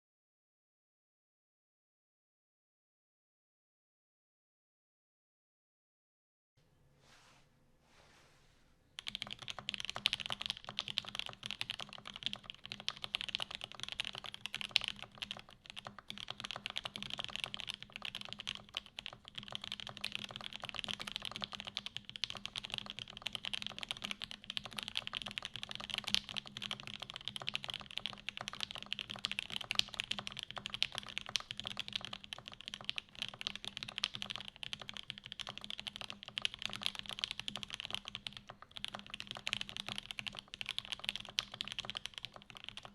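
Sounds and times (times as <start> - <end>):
mechanical keyboard typing: 9.0 - 42.9.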